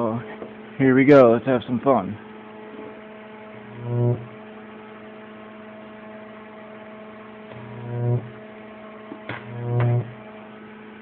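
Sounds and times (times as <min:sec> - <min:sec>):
high-voltage arc buzz: 0:02.7 - 0:10.6
transformer humming: 0:03.4 - 0:04.5, 0:07.4 - 0:11.0.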